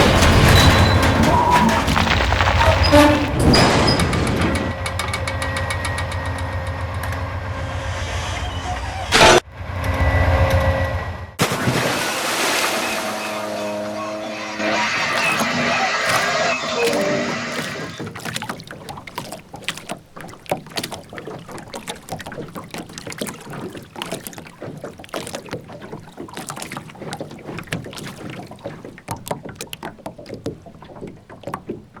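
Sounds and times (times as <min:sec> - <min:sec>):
water splashing against a boat: 0:00.0 - 0:09.5, 0:11.4 - 0:32.0.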